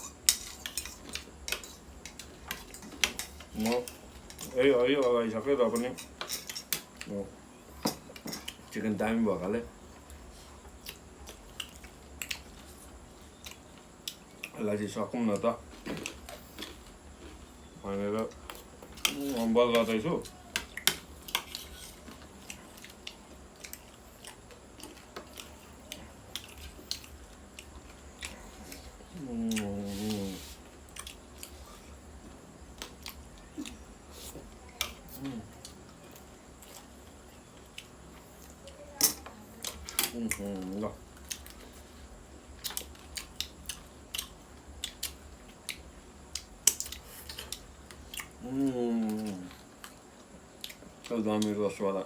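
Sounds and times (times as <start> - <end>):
person chewing food: 9.9 - 14.6, 15.7 - 38.6, 39.6 - 51.5
person speaking: 29.1 - 30.6.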